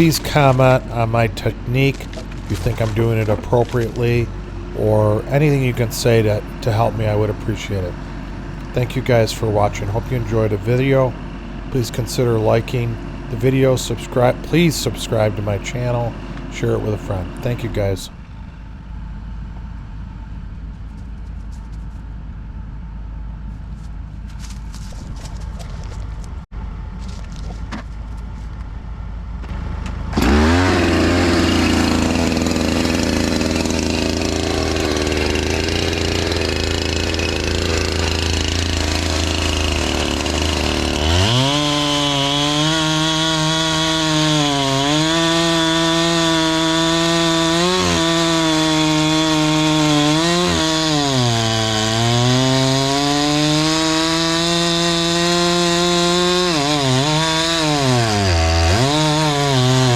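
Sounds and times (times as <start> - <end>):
chainsaw cutting wood: 0.0 - 18.1, 29.4 - 59.9.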